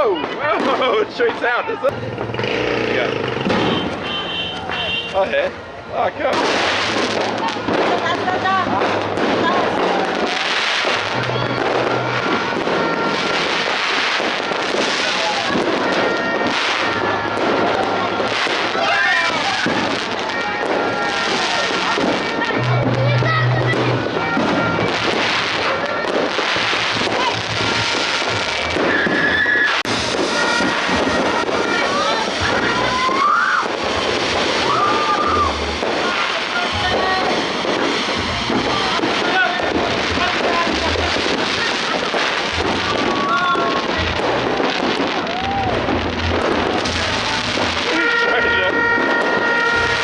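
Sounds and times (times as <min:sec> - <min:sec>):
fireworks crackling and banging: 0:00.0 - 0:50.0
high firework whistle: 0:03.4 - 0:05.2, 0:08.9 - 0:50.0.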